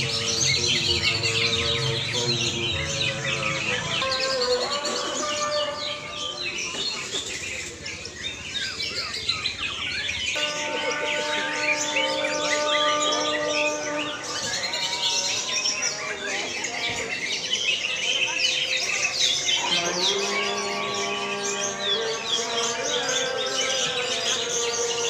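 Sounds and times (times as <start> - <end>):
birds singing chirps and trills: 0.0 - 25.0
steady held tones: 10.4 - 15.9.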